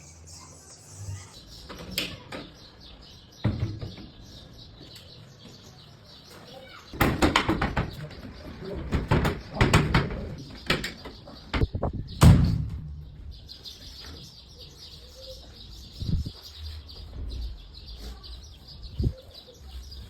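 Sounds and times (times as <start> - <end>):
faint birds chirping: 0.0 - 20.0
cabinet doors closing: 8.8 - 11.0.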